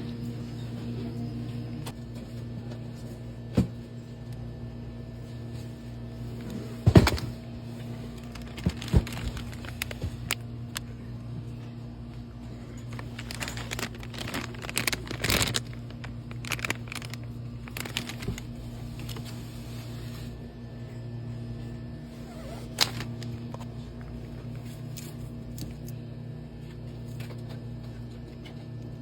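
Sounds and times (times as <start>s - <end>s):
steady low hum: 0.0s - 29.0s
rustling of packaged items: 5.2s - 20.4s, 22.1s - 26.0s.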